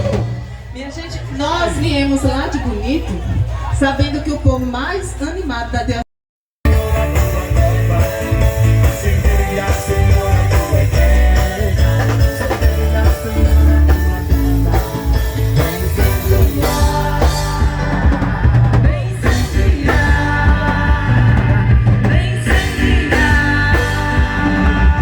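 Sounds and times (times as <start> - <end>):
drum kit: 0.0 - 0.7, 6.6 - 25.0
live rock band playing: 0.0 - 0.8, 6.6 - 25.0
heavy bass: 0.0 - 2.0, 6.6 - 25.0.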